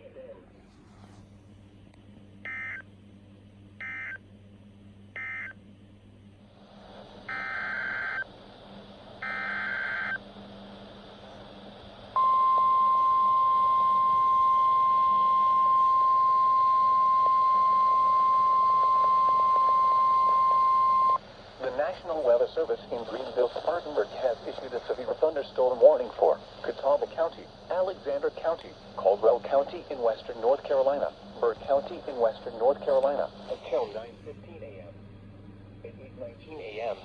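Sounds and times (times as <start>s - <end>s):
steady alarm tone: 7.3s - 8.3s, 9.2s - 10.2s, 12.2s - 21.2s.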